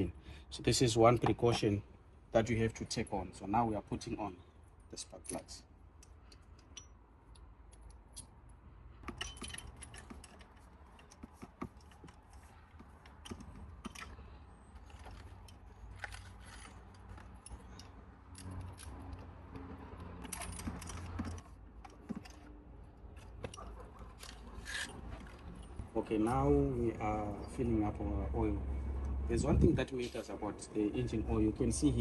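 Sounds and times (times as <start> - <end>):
metallic tool clicks and clinks: 5.2 - 8.4, 9.1 - 11.2.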